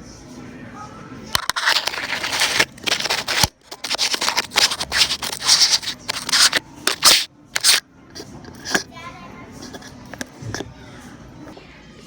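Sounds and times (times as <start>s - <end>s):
rustling and scraping on microphone: 1.4s - 9.0s, 9.6s - 11.1s.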